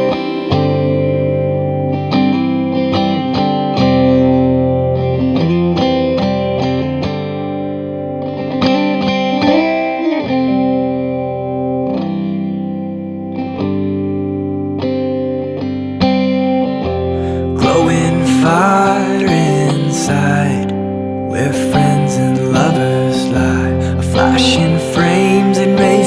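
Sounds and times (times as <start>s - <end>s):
guitar picking single notes: 0.0s - 12.4s, 16.5s - 26.0s
sustained notes: 17.2s - 26.0s.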